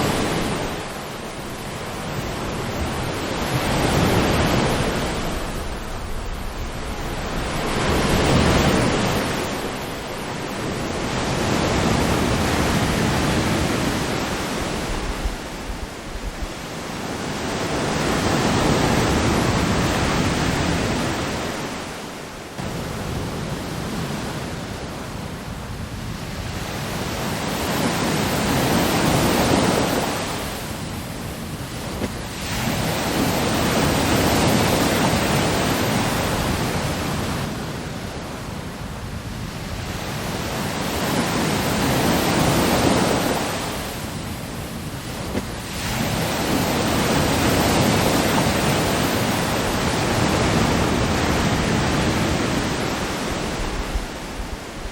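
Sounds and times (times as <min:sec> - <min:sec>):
ocean waves breaking: 0:00.0 - 0:54.9.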